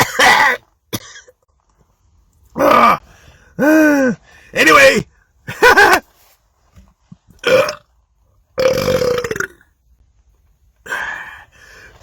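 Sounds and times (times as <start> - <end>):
man belching: 2.6 - 3.0, 7.4 - 7.9, 8.6 - 9.7.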